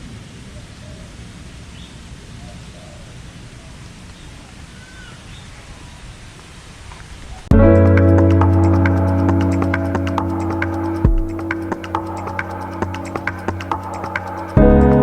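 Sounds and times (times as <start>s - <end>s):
loud music: 7.5s - 15.0s.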